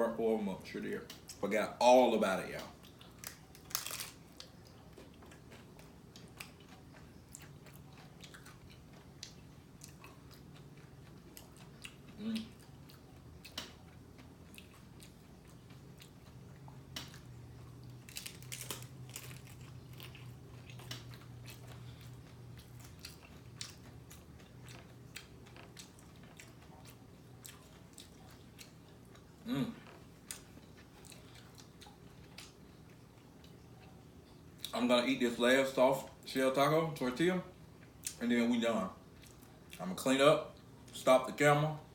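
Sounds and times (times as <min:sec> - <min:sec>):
person crunching taco shells: 0:02.8 - 0:33.9.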